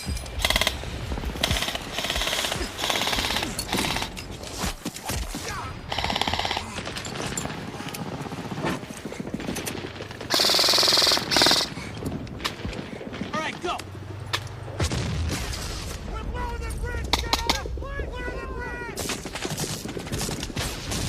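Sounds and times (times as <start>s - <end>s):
airsoft guns firing full-auto: 1.4s - 4.2s, 9.4s - 11.8s.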